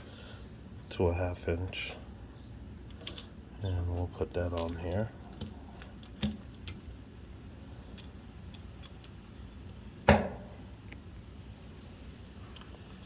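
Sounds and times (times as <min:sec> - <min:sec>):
metallic clink of socket: 0:06.7 - 0:07.1.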